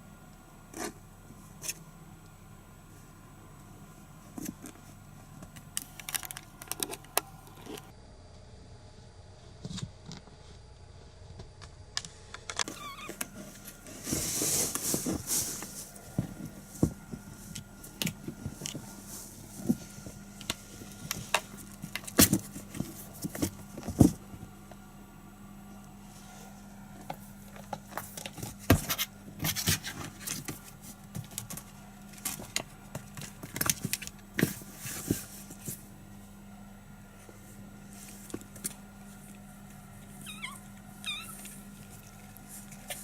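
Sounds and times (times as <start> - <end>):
rustling scuffle: 12.7 - 24.4.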